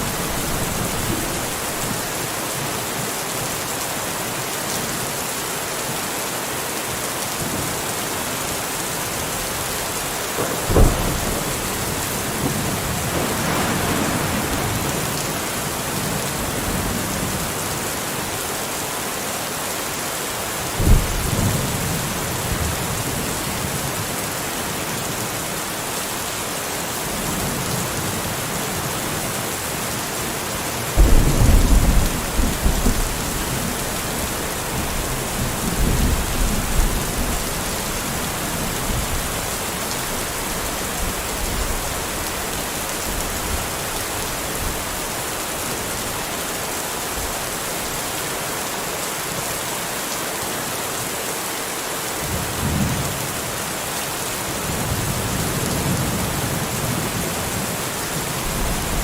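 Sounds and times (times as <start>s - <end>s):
thunder rumbling: 0.0s - 2.2s, 10.3s - 17.6s, 31.0s - 44.9s
steady rain: 0.0s - 59.0s.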